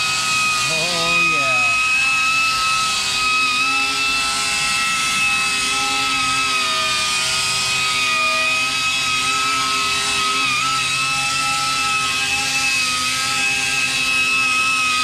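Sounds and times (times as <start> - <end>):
power polisher whining: 0.0 - 15.0.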